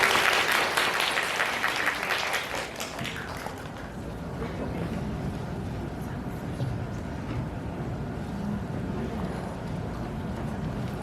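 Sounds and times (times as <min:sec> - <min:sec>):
audience applauding: 0:00.0 - 0:04.0.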